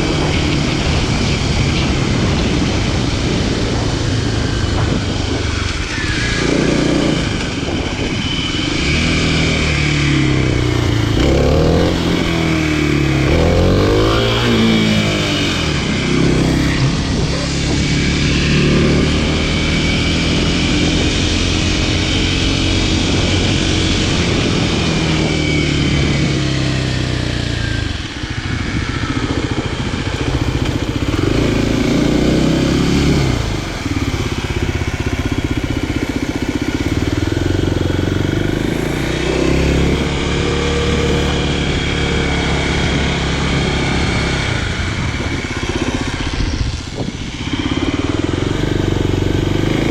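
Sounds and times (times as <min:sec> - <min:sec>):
motorcycle engine running: 0:00.0 - 0:49.9.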